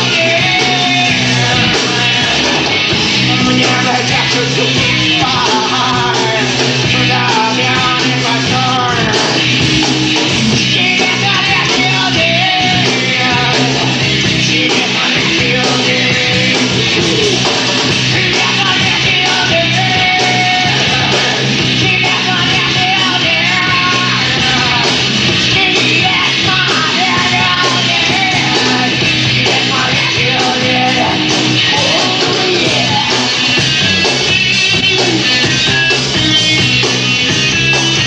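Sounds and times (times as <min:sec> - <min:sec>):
rock band playing live: 0:00.0 - 0:38.0
person yelling or singing: 0:10.8 - 0:17.5, 0:25.6 - 0:33.3.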